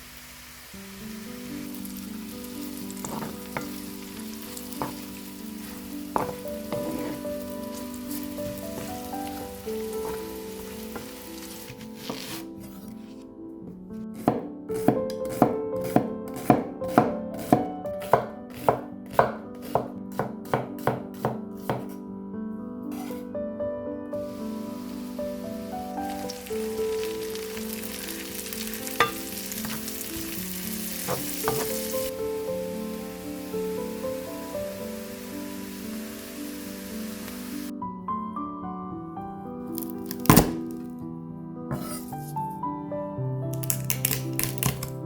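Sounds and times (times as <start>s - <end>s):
faint hiss: 0.0s - 11.8s, 24.2s - 37.7s
background music: 0.6s - 45.0s
knife chopping on cutting board: 11.7s - 12.8s, 14.2s - 22.0s, 22.9s - 23.2s, 40.1s - 40.6s, 41.7s - 42.2s.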